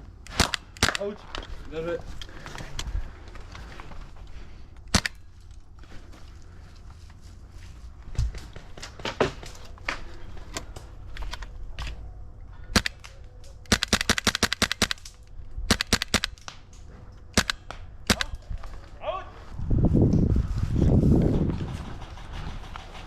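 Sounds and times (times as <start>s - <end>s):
airsoft guns firing: 0.3s - 1.2s, 12.7s - 15.1s, 15.7s - 16.6s, 17.3s - 18.4s.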